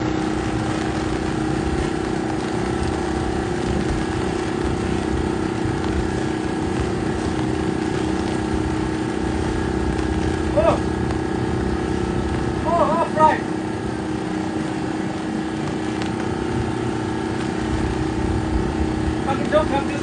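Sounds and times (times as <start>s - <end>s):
motor droning: 0.0s - 20.0s
wind rumbling on microphone: 0.0s - 20.0s.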